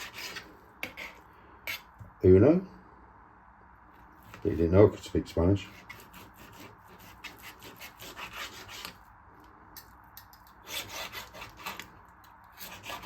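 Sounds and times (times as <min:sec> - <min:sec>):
knife sawing through raw meat: 0:00.0 - 0:01.9, 0:05.6 - 0:09.0, 0:10.6 - 0:11.9, 0:12.6 - 0:13.0.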